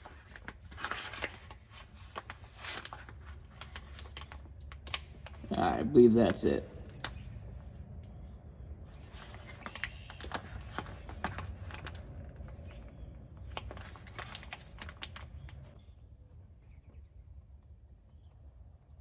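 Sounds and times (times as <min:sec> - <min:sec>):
hands handling plastic bag clicks: 0:00.0 - 0:05.6, 0:09.0 - 0:15.8
steady low rumble: 0:04.5 - 0:13.8.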